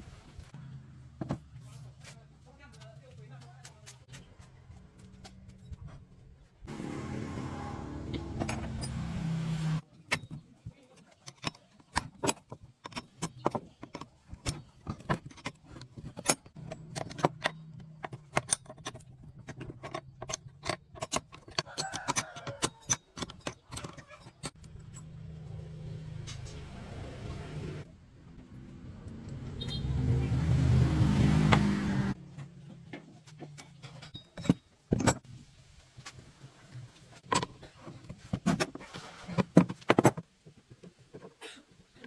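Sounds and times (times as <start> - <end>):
metal tools clinking: 8.2 - 9.2, 33.6 - 35.2.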